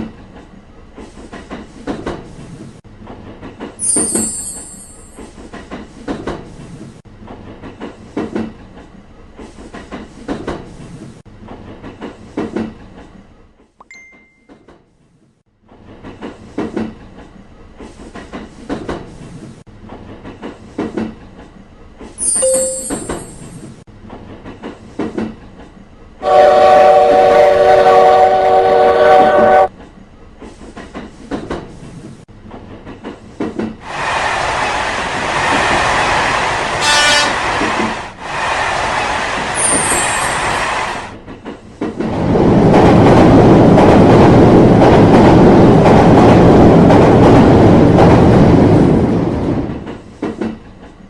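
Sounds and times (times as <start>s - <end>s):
train wheels clacking on rails: 0.0s - 13.2s, 15.7s - 28.0s, 29.3s - 51.0s
train horn chord: 26.2s - 29.7s, 36.8s - 37.5s.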